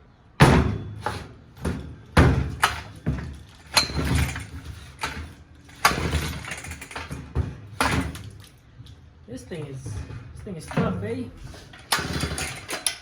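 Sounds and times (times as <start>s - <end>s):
chainsaw pull-start: 11.5s - 13.0s.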